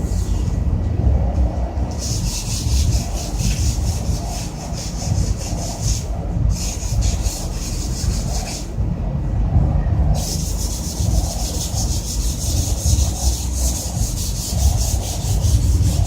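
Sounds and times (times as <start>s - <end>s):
low rumble: 0.0s - 16.0s
hand scrubbing metal casing: 10.2s - 16.0s.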